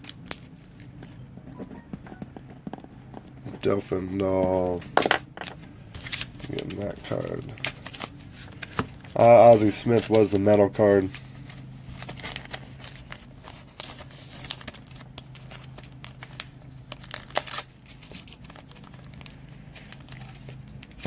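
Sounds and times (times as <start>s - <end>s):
steady low hum: 0.0s - 21.0s
plastic packaging crinkling: 5.9s - 21.0s.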